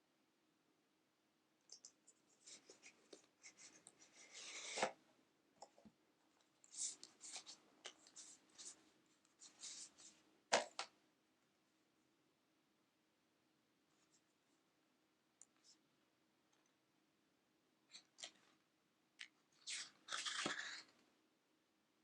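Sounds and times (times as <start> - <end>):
packaging rustles and scrapes: 19.6 - 20.9.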